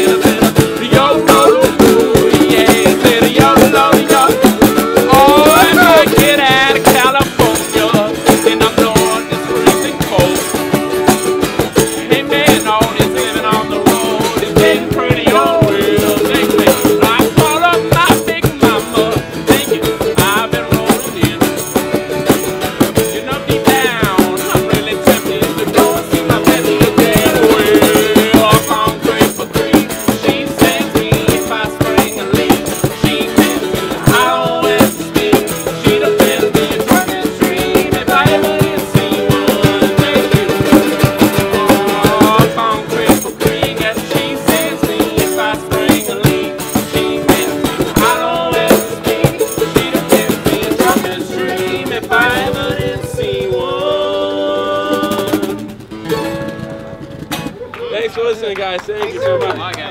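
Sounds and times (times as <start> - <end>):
rattling percussion rhythm: 0.0 - 57.6
acoustic band playing: 0.0 - 59.9.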